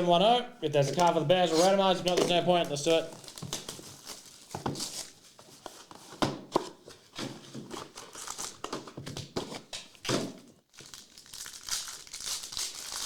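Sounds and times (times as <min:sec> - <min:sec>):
plastic wrapping crinkling: 0:00.8 - 0:06.2, 0:10.7 - 0:13.0.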